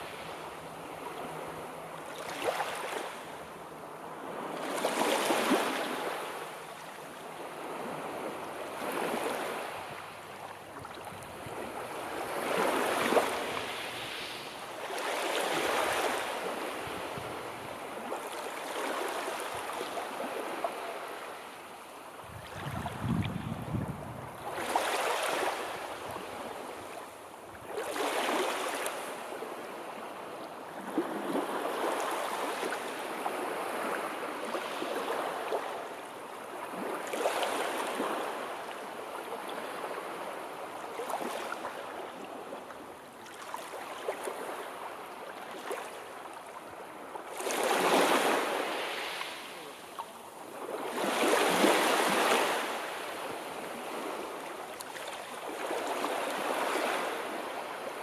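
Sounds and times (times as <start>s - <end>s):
sea waves washing in: 7.8s - 29.4s.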